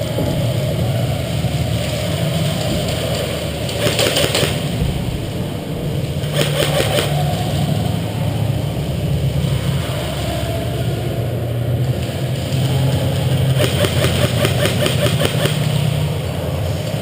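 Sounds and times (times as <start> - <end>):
low rumble: 0.0 - 17.0
airsoft gun full-auto burst: 3.8 - 4.7, 6.2 - 7.2, 13.5 - 15.8.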